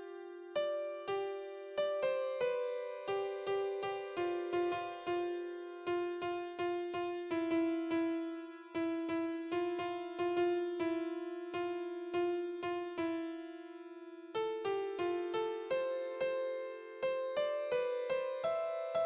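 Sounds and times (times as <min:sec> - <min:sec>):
slow solo piano melody: 0:00.0 - 0:19.0.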